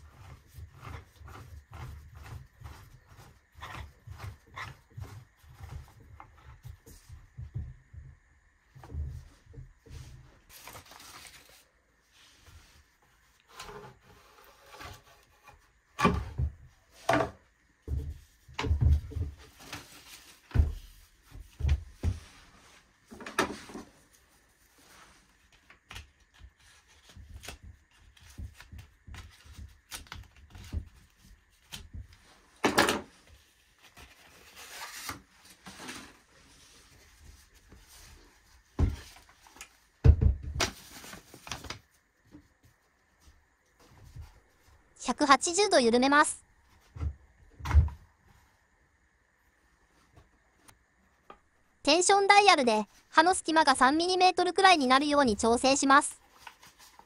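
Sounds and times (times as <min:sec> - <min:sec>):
quiet scraping: 0:12.2 - 0:16.0.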